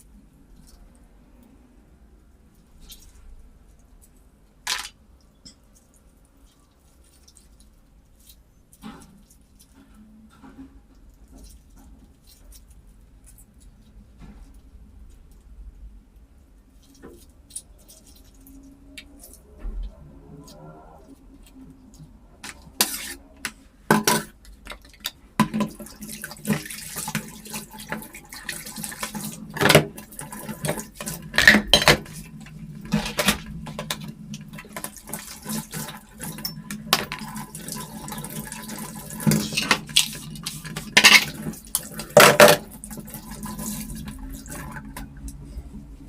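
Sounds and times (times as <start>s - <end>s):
low steady hum: 0.0s - 46.0s
dishes and utensils clinking: 22.4s - 44.9s.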